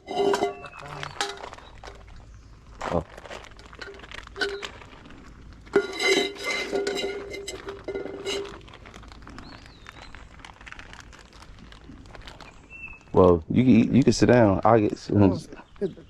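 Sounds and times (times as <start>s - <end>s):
metal cookware clanking: 0.0s - 2.1s, 3.6s - 4.7s, 5.7s - 8.6s.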